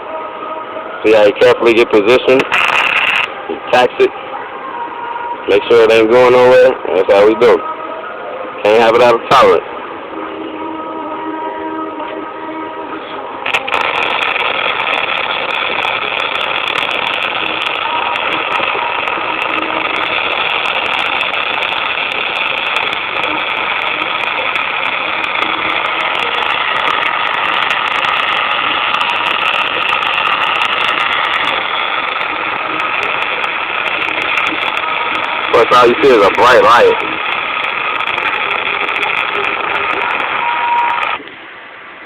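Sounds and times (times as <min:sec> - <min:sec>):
arc welding crackling hiss: 0:02.4 - 0:03.3, 0:13.4 - 0:41.2
welding spatter pops: 0:13.5 - 0:41.2.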